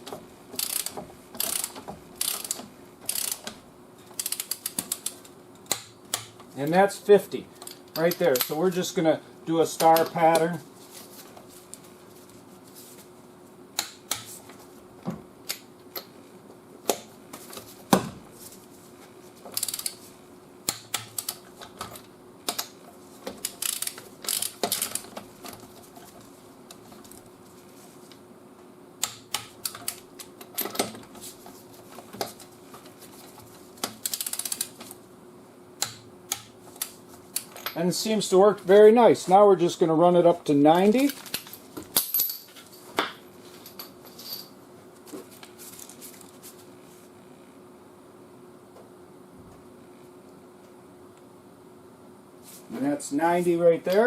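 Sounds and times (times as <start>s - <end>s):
faint steady hum: 0.0s - 54.0s
torque wrench ratchet clicks: 0.6s - 3.5s, 4.2s - 5.2s, 19.6s - 20.0s, 23.5s - 25.0s, 34.0s - 34.7s.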